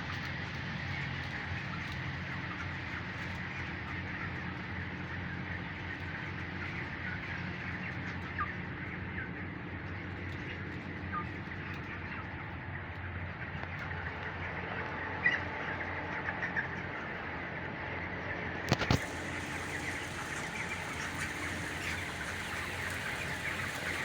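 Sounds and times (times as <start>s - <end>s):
chicks and chickens peeping: 0.8s - 24.0s
steady low hum: 19.0s - 24.0s.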